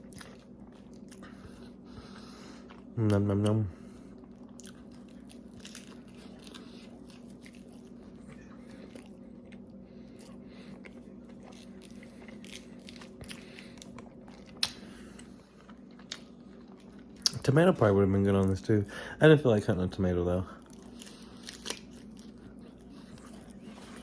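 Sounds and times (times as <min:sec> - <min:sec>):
chewing with wet mouth clicks: 0:00.0 - 0:17.5, 0:20.6 - 0:24.0
steady low hum: 0:00.0 - 0:24.0
crisp crunching of lettuce: 0:04.3 - 0:17.7, 0:20.5 - 0:24.0.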